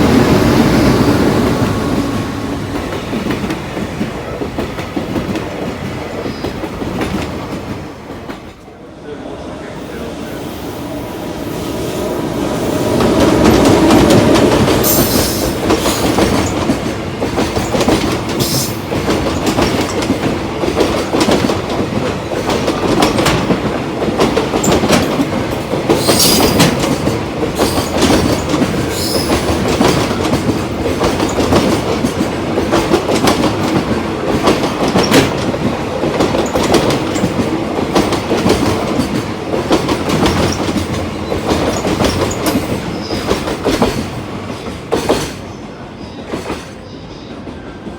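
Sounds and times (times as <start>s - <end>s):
freight train passing: 0.0s - 47.9s
wheels clacking over rail joints: 12.9s - 45.5s.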